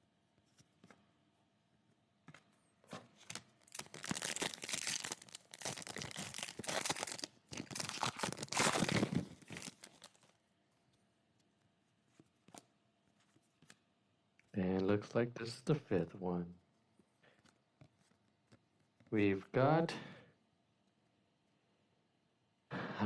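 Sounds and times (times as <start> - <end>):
foil wrapper tearing and crinkling: 3.2 - 10.3.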